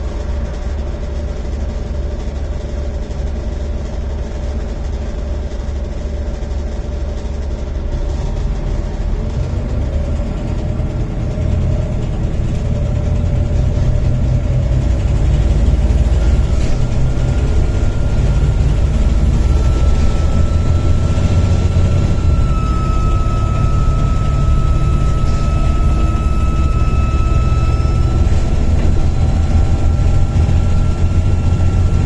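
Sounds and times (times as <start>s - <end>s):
bus diesel engine working hard: 0.0s - 32.0s
turbocharger whine: 7.6s - 32.0s.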